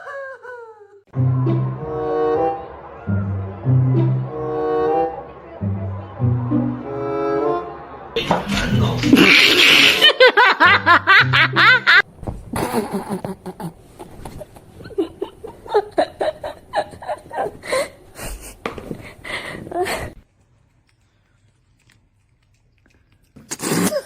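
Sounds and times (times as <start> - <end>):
people laughing: 8.3 - 12.0, 12.6 - 20.2.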